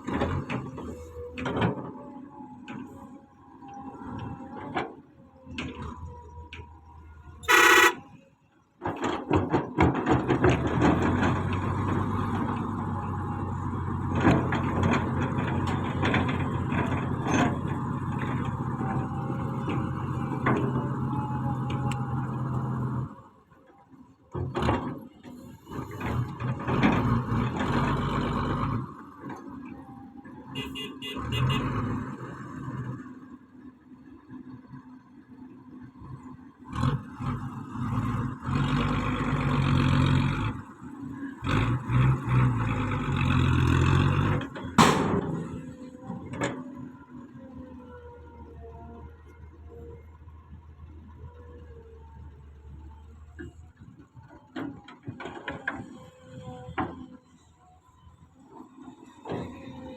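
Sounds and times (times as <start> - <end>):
horn blast: 7.4 - 8.0
bulldozer clanking loudly: 7.5 - 8.1, 41.5 - 47.2.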